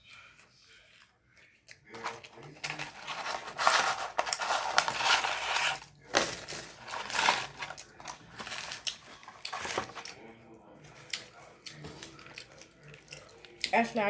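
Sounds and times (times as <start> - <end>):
crunching chewing of crispy food: 0.0 - 13.7.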